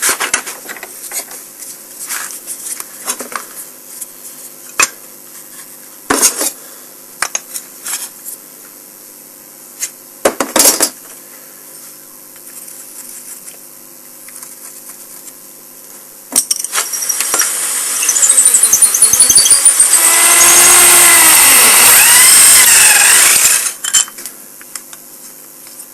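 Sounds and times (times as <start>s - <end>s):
power tool whine: 16.7s - 24.0s.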